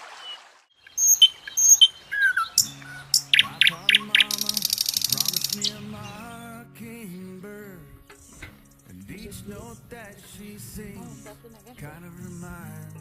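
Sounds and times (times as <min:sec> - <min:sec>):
fast high bird trill: 0:00.0 - 0:06.4
birds chirping: 0:00.0 - 0:13.0
background music low notes: 0:02.6 - 0:13.0.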